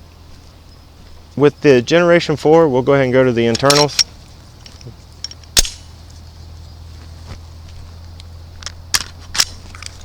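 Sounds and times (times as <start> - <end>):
steady low hum: 0.0 - 10.0
pistol parts clicking: 3.4 - 5.9, 8.2 - 10.0.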